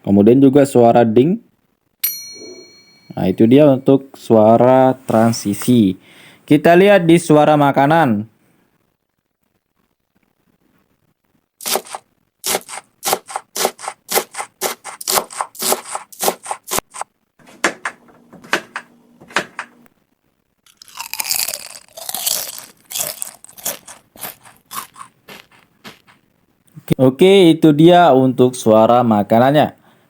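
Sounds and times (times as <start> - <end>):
crisp crunching bites: 11.6 - 16.0, 20.7 - 26.2.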